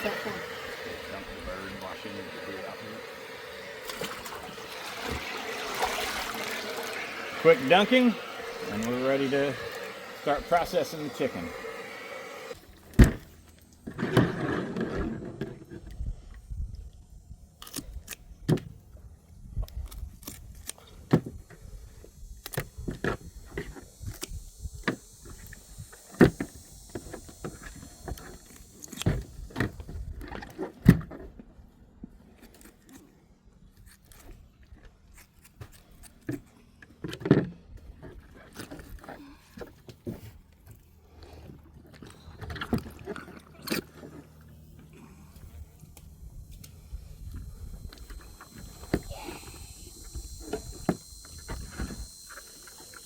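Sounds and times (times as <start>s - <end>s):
steady hiss: 0.0s - 12.6s, 21.5s - 29.4s, 45.2s - 53.0s.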